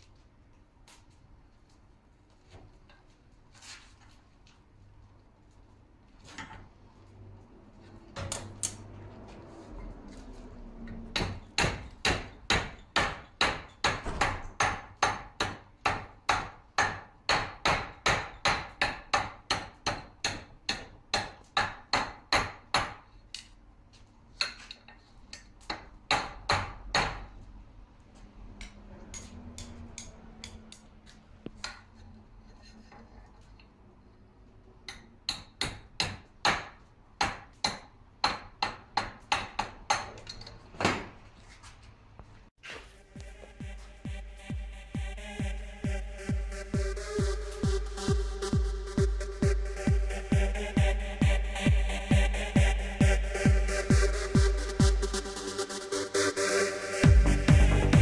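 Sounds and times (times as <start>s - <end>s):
hammer striking metal on anvil: 11.1s - 23.1s, 34.9s - 40.3s.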